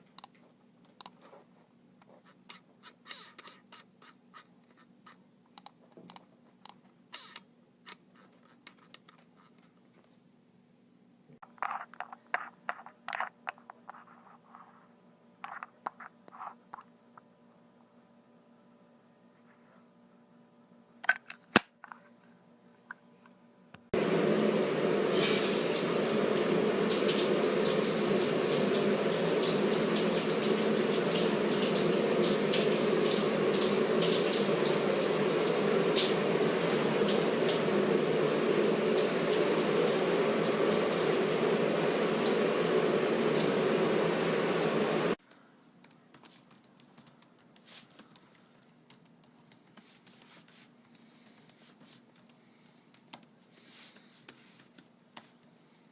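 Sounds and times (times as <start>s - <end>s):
tap water running into sink: 25.1s - 45.2s.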